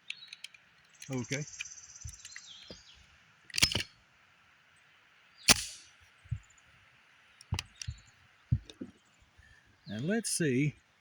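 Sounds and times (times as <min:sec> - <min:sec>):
pistol metallic clacks: 0:03.5 - 0:03.9, 0:05.5 - 0:05.9.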